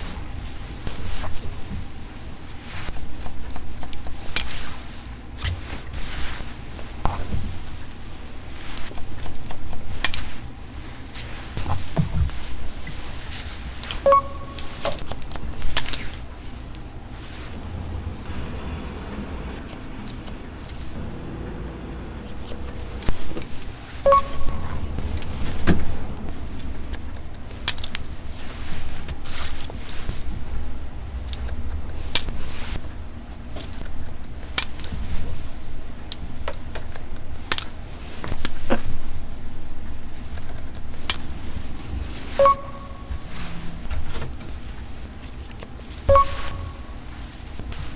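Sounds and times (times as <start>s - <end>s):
steady low hum: 0.0s - 47.9s
scissors snipping hair: 2.9s - 4.6s, 8.8s - 10.3s, 40.3s - 41.2s
metallic ping: 21.0s - 26.4s, 46.1s - 47.0s.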